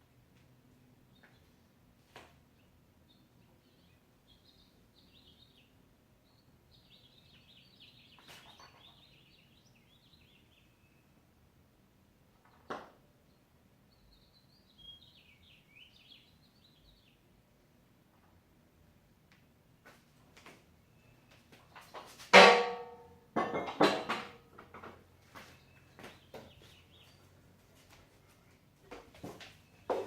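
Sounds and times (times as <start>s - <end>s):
songbird chirping and warbling: 2.6s - 11.2s, 13.3s - 17.3s
sharp knocks: 22.3s - 24.8s.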